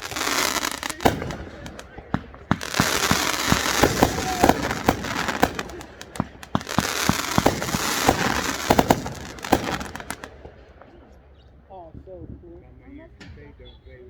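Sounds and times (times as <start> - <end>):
fireworks crackle: 0.0 - 11.2
fireworks bangs and pops: 0.0 - 11.5.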